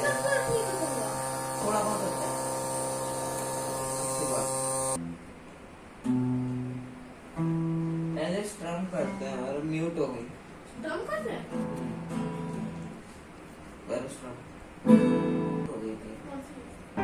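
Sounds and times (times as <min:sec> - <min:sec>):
small motor buzzing: 0:00.0 - 0:05.0.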